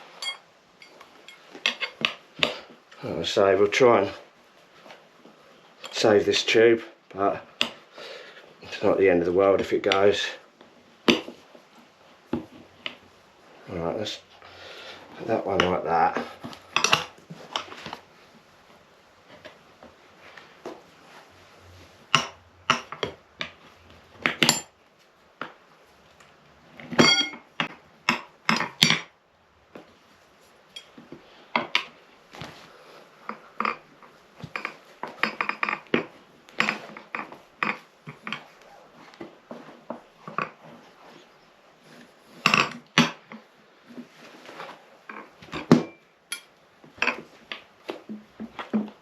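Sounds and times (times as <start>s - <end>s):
tyre irons clanking on wheel rim: 26.9s - 29.0s.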